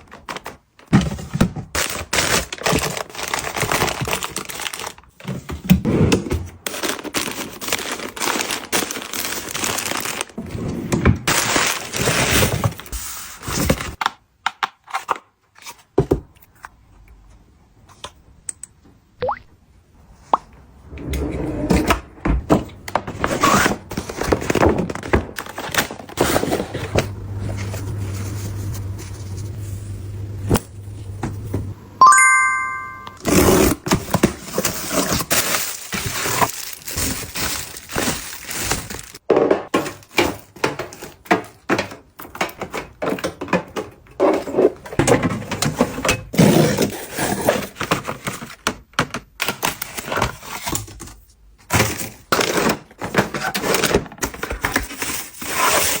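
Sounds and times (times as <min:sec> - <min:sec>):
packaging taps and rustles: 0:06.7 - 0:10.4, 0:33.9 - 0:39.2
short bright chime: 0:32.0 - 0:33.2.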